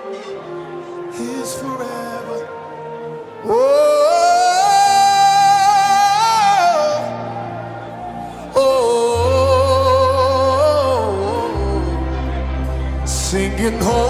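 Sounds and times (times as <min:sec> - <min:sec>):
person singing long held notes: 0:00.0 - 0:14.0
band playing with bass line: 0:09.2 - 0:14.0.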